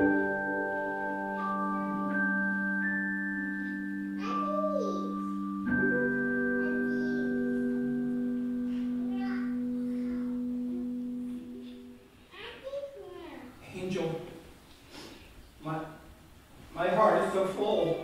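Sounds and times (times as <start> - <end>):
sustained keyboard chords: 0.0 - 12.2.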